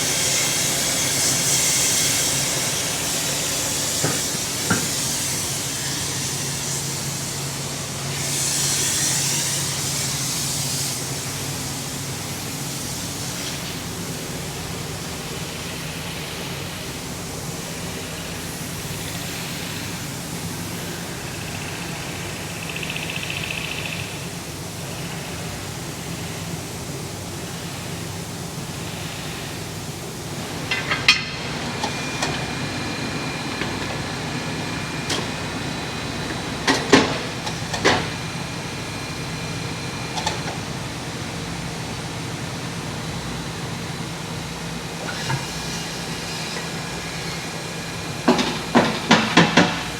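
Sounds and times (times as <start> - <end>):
mechanical hum: 0.0 - 49.9.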